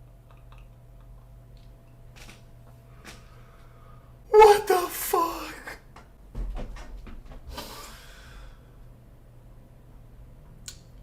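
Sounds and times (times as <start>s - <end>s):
person breathing hard: 3.1s - 4.2s, 7.5s - 8.8s.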